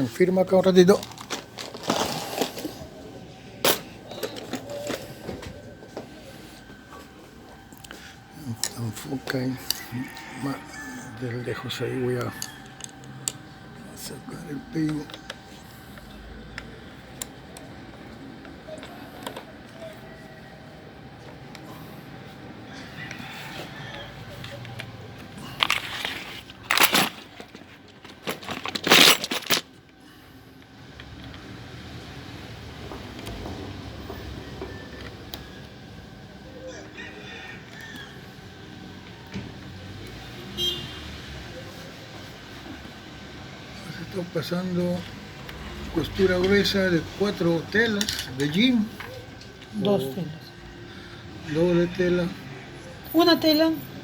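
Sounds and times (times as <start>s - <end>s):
small metal parts clicking: 12.3s - 13.4s, 25.6s - 29.8s.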